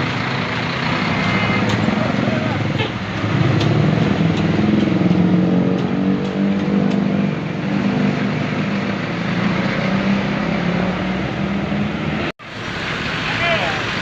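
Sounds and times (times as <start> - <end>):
vehicle engine running: 0.0 - 9.6.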